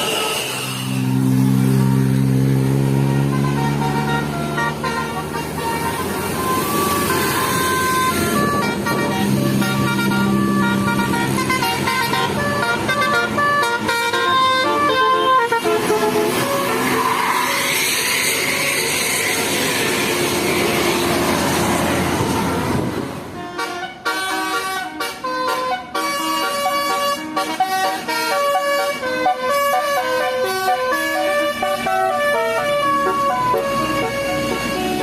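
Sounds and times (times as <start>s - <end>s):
bus air horn melody: 0.0s - 35.0s.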